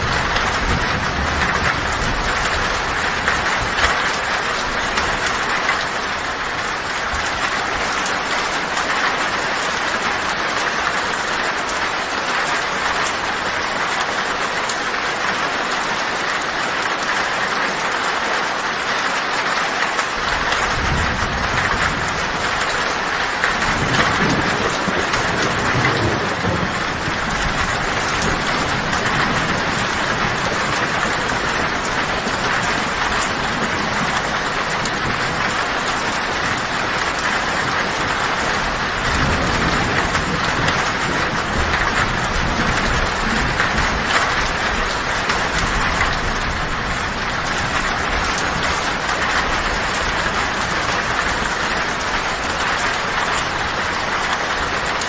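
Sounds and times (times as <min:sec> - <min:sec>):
low thunder rumble: 0:00.0 - 0:08.6, 0:20.4 - 0:54.4
heavy rain on a tin roof: 0:00.0 - 0:55.0.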